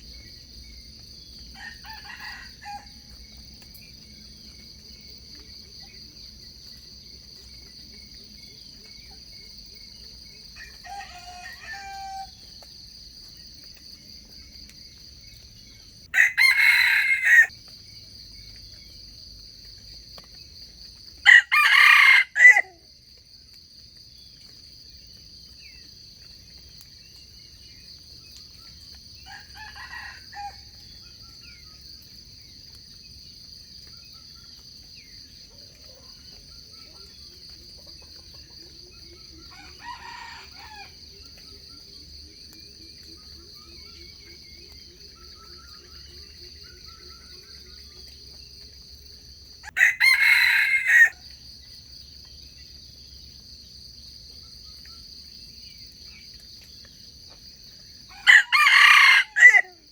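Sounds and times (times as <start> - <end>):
roosters crowing: 1.6 - 3.1, 10.6 - 12.4, 16.1 - 17.5, 21.2 - 22.8, 29.2 - 30.9, 39.4 - 41.0, 49.6 - 51.2, 58.1 - 59.8.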